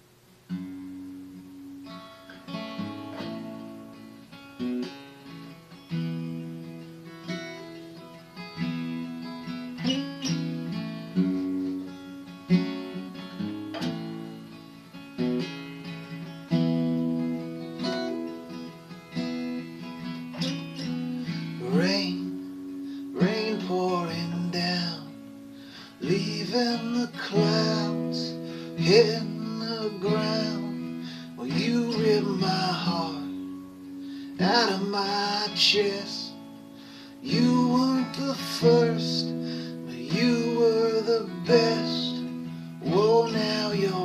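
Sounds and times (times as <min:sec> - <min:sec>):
acoustic guitar: 0:00.0 - 0:44.0
person singing: 0:21.4 - 0:25.2, 0:26.0 - 0:36.4, 0:37.1 - 0:44.0.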